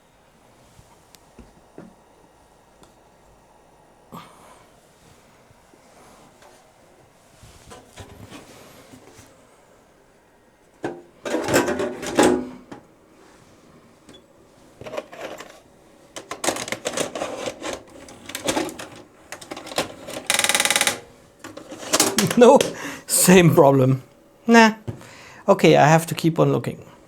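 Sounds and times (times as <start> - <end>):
video recorder mechanism clattering: 14.8 - 22.8.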